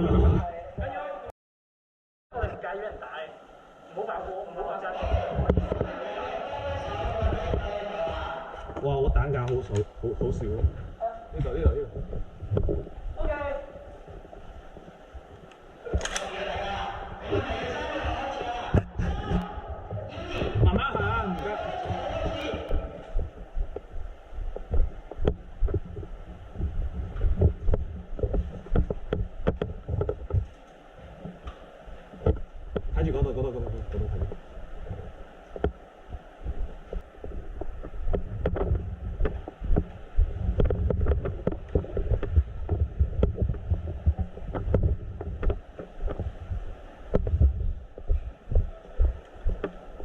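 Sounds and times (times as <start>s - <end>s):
wind rumble on microphone: 0.0s - 1.0s, 5.0s - 16.0s, 16.6s - 50.0s
camera handling noise: 15.4s - 16.4s
sharp clicks: 15.5s - 16.3s.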